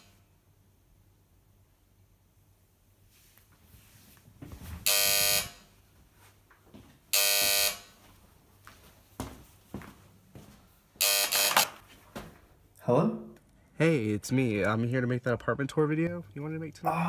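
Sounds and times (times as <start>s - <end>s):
door buzzer: 4.8s - 5.7s, 7.1s - 8.0s, 11.0s - 11.8s.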